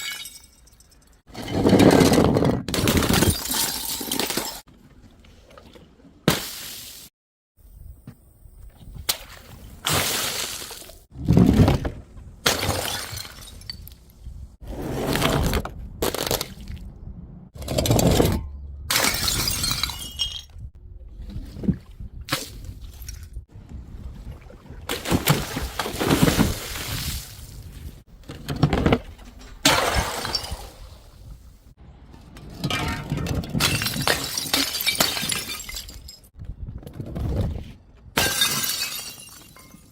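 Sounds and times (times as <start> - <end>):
glass bottles smashing: 0.0 - 1.2, 2.8 - 4.6, 18.9 - 20.6, 32.6 - 36.3, 38.2 - 39.9.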